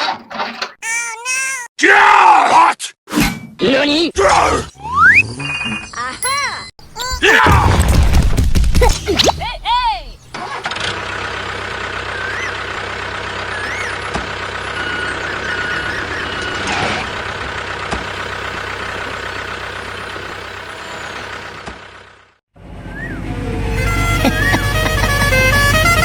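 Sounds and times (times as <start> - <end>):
mechanical engine running: 10.6 - 25.8.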